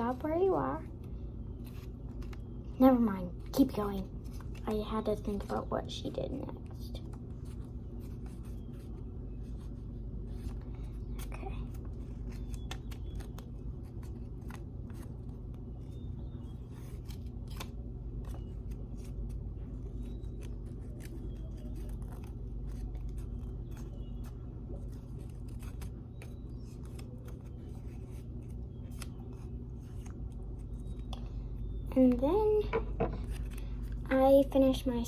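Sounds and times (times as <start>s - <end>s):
steady low hum: 0.0s - 35.0s
paper rustling and creasing: 3.6s - 31.1s.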